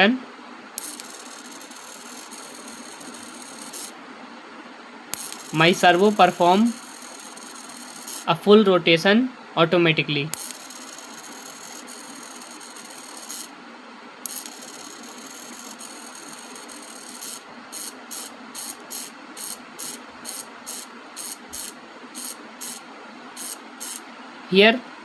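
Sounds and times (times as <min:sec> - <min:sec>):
servo motor buzzing: 0:00.8 - 0:03.9, 0:05.1 - 0:08.4, 0:10.3 - 0:13.5, 0:14.2 - 0:22.8, 0:23.4 - 0:24.0.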